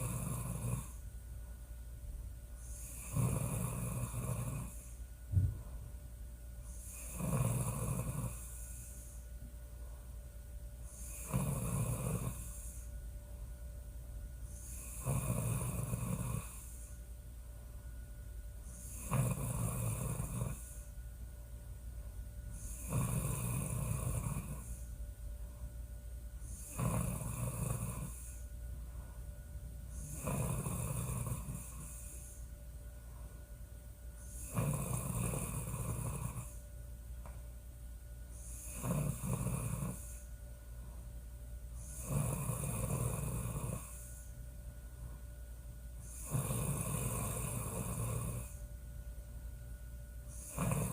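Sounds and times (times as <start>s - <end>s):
woman snoring: 0.0s - 1.0s, 2.6s - 5.0s, 6.7s - 9.2s, 10.9s - 12.9s, 14.5s - 17.0s, 18.6s - 21.0s, 22.5s - 25.0s, 26.4s - 28.5s, 29.9s - 32.5s, 34.2s - 36.6s, 38.4s - 40.3s, 41.8s - 44.4s, 46.0s - 48.7s, 50.3s - 50.9s.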